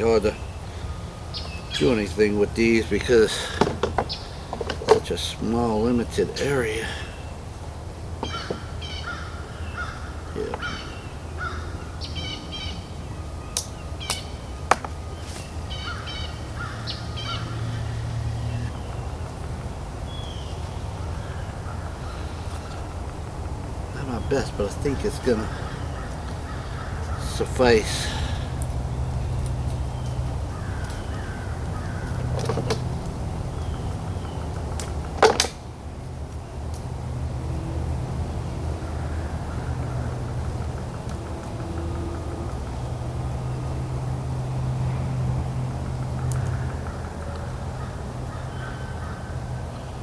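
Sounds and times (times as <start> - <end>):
bird cawing: 0.0 - 35.4, 38.7 - 43.7, 44.8 - 50.0
steady low hum: 0.0 - 50.0
sharp handling noises: 2.6 - 5.2, 32.0 - 33.2, 34.6 - 35.7.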